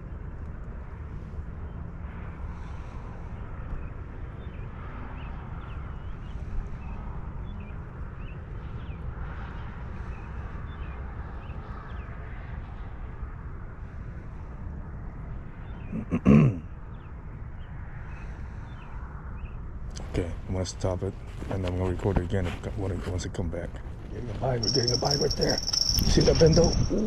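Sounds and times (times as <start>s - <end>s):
wind rumbling on microphone: 16.8s - 27.0s
small bird chirping: 24.2s - 27.0s.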